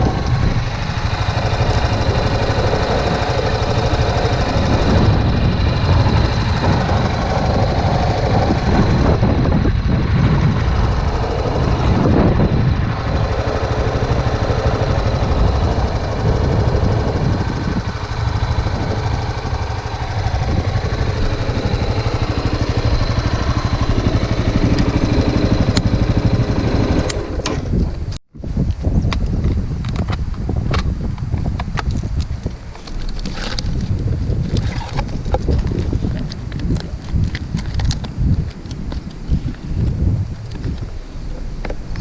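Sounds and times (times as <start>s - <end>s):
motorcycle engine idling: 0.0s - 28.1s.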